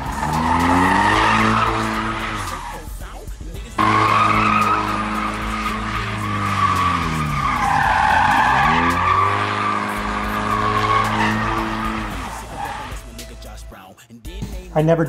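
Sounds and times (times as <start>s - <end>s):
car engine revving: 0.0s - 13.7s
tyres squealing and skidding: 0.0s - 13.8s.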